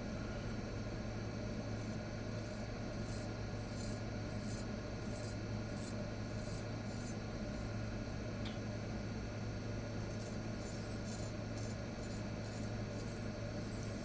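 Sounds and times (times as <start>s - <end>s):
steady low hum: 0.0s - 14.0s
knife scraping hair: 10.1s - 13.2s.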